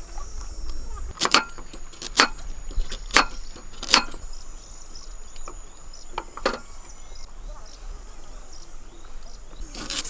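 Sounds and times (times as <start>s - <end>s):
blade chopping wood: 1.1s - 4.2s.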